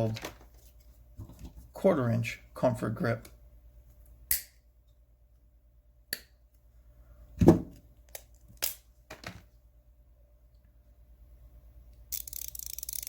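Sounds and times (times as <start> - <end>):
ratchet handling clicks: 12.1 - 13.0.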